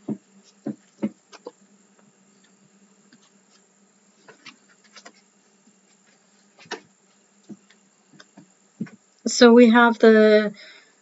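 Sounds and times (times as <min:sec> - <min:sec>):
faint low hum: 0:00.0 - 0:11.0
cards tapping and rustling: 0:04.2 - 0:06.9.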